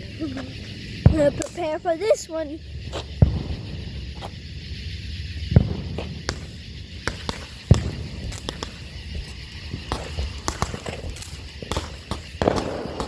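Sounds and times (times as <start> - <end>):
firework bangs: 0.5 - 13.0
firework pops and crackles: 2.8 - 4.5, 5.4 - 13.0.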